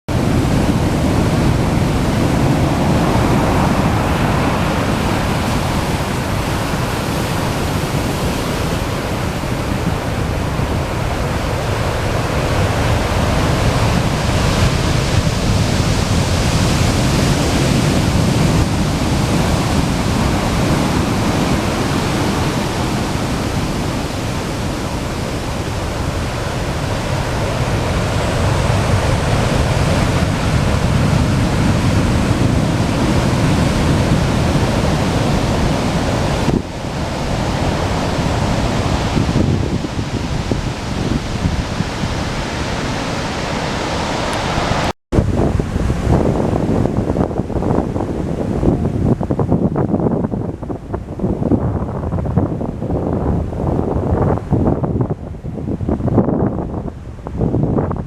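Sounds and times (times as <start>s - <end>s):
heavy surf breaking: 0.1s - 58.0s
strong wind: 0.1s - 58.0s.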